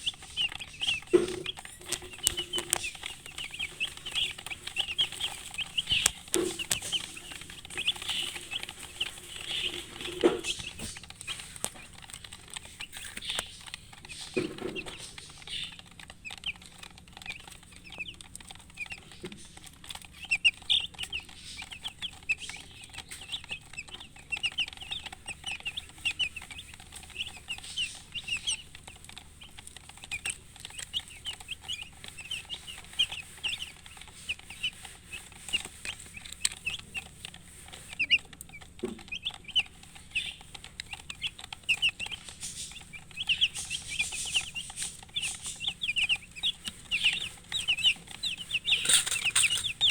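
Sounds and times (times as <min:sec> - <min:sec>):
chicks peeping: 0:00.0 - 0:49.9
hen clucking: 0:00.0 - 0:49.9.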